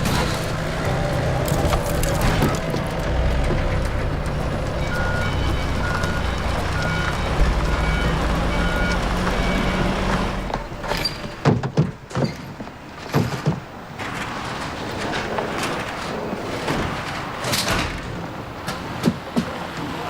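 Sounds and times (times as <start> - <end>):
large vehicle engine running: 0.0 - 11.4
knocks and clatter: 0.0 - 20.0
reversing beeps: 4.8 - 10.0.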